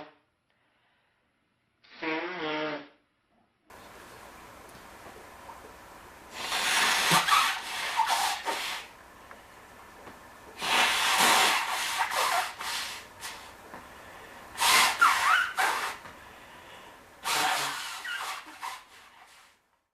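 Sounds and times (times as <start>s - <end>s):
man blowing his nose: 1.9s - 2.9s, 6.3s - 8.9s, 10.6s - 13.6s, 14.6s - 16.1s, 17.2s - 19.6s.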